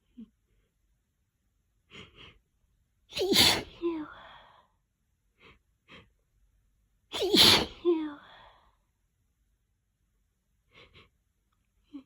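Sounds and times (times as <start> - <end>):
loud wet sneeze: 3.2 - 3.8, 7.2 - 7.9.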